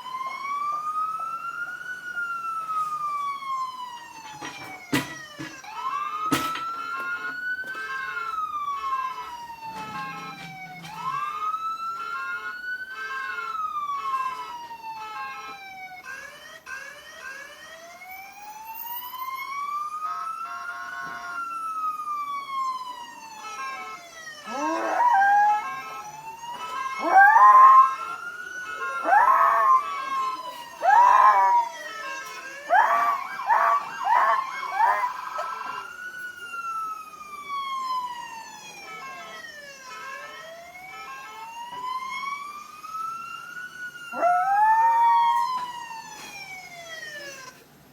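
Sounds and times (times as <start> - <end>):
fire engine siren wailing: 0.0 - 47.7
dog howling: 24.4 - 35.9, 44.1 - 45.7.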